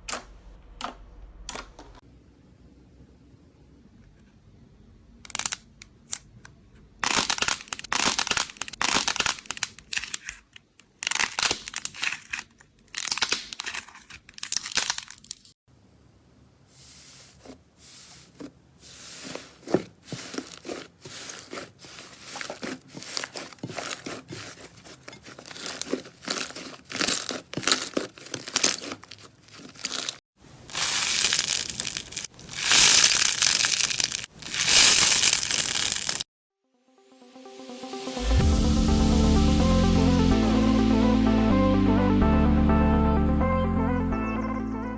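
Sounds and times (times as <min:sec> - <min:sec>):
slime squishing: 0:17.1 - 0:36.2.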